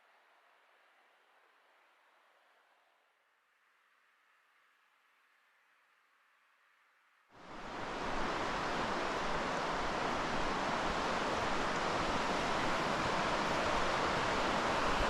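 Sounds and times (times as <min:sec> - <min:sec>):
waterfall roaring: 0:07.4 - 0:15.0.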